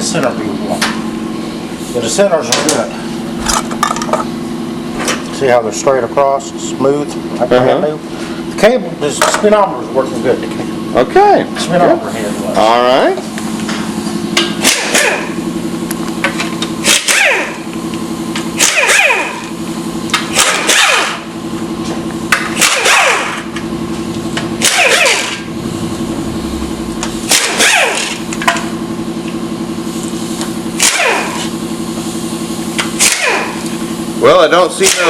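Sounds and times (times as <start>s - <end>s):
steady mechanical hum: 0.0s - 35.0s
pneumatic tool bursts: 14.4s - 15.4s, 16.8s - 17.8s, 18.4s - 21.3s, 22.3s - 23.5s, 24.5s - 25.5s, 27.0s - 28.7s, 29.8s - 34.2s, 34.8s - 35.0s.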